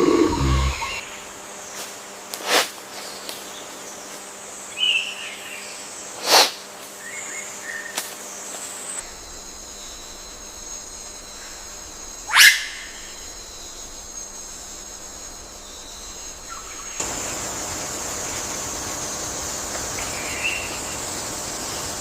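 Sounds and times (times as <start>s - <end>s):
loud low animal call: 0.0s - 1.0s
high insect chorus: 0.0s - 22.0s
bird chirps: 9.1s - 17.4s.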